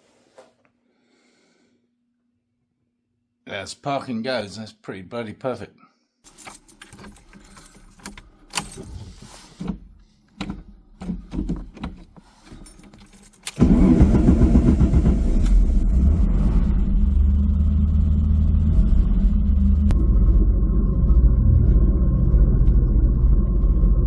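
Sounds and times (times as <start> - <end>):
keys clicking and knocking: 6.3 - 13.6.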